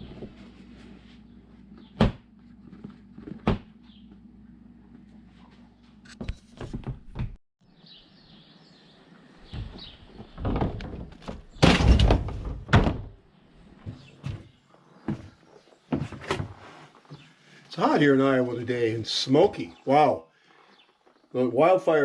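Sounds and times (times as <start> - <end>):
thuds: 9.5 - 13.2.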